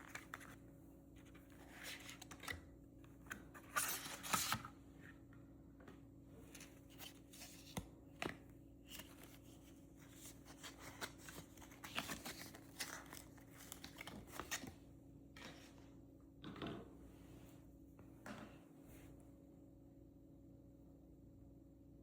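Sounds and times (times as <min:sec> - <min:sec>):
pencils and packaging rustling: 0:00.0 - 0:00.6, 0:01.2 - 0:05.3, 0:06.4 - 0:14.8
faint steady hum: 0:00.0 - 0:22.0.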